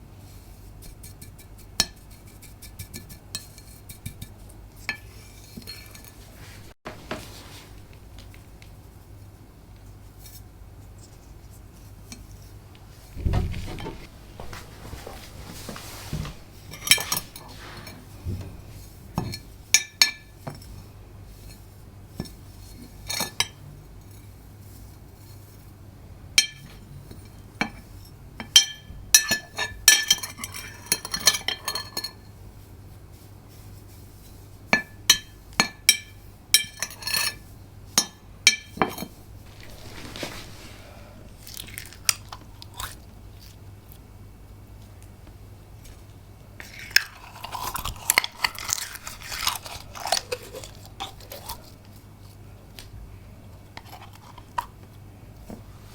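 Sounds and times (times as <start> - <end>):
dull thud: 13.2 - 15.2.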